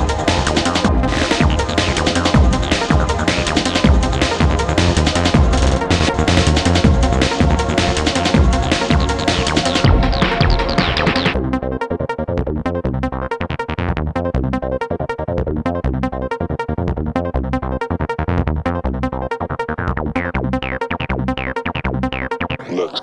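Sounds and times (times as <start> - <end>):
electronic dance music: 0.0 - 11.4.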